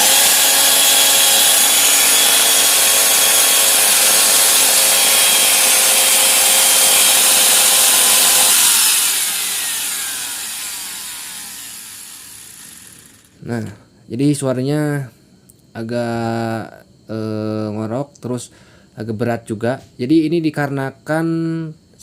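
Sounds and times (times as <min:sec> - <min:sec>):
angle grinder running: 0:00.0 - 0:13.4.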